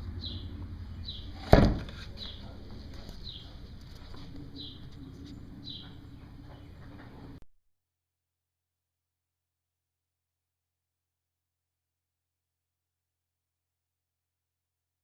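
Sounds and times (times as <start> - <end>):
bird chirping: 0.0 - 7.4
loud thump: 1.3 - 2.0.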